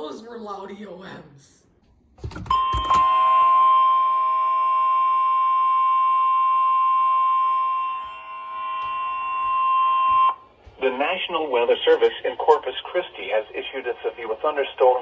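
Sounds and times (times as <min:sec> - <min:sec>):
high steady alarm tone: 0:02.3 - 0:12.4.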